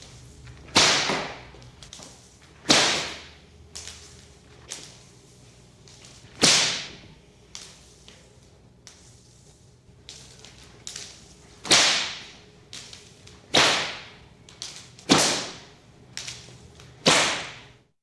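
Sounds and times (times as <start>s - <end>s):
whip cracking: 0.0s - 5.1s, 5.8s - 8.3s, 10.1s - 17.8s
swish of whip lash: 0.7s - 2.0s, 2.6s - 5.1s, 6.0s - 8.1s, 10.1s - 17.8s.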